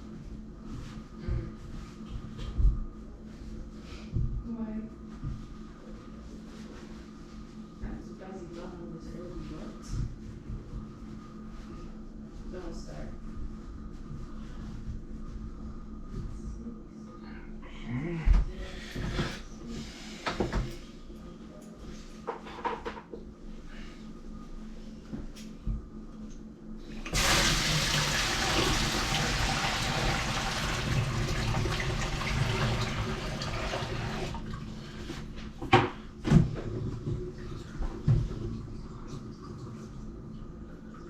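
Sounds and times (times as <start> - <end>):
water running into a sink: 27.1 - 34.7.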